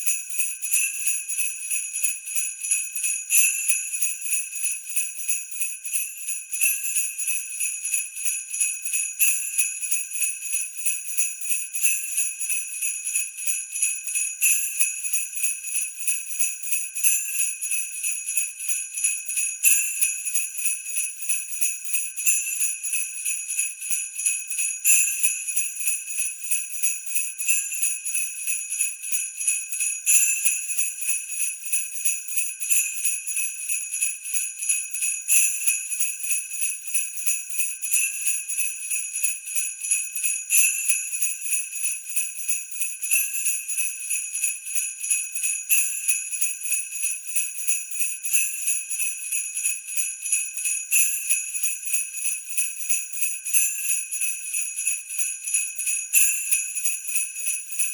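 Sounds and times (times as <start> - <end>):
sleigh bells jingling: 12.1 - 57.9.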